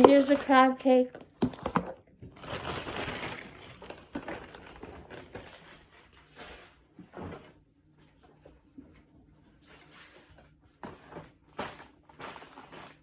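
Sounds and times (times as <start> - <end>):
food wrapping crinkling: 0.0 - 0.8, 1.4 - 6.8, 11.5 - 13.0.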